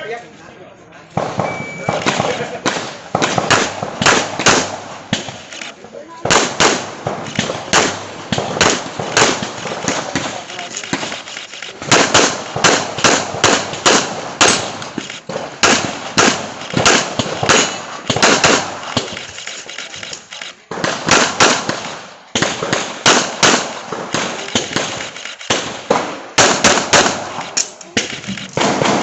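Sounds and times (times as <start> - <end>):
handgun shots: 6.3 - 21.8, 22.4 - 29.0.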